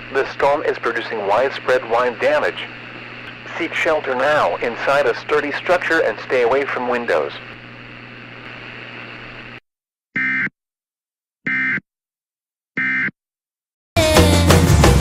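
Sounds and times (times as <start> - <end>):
steady hiss: 0.0 - 9.2
music: 14.0 - 15.0.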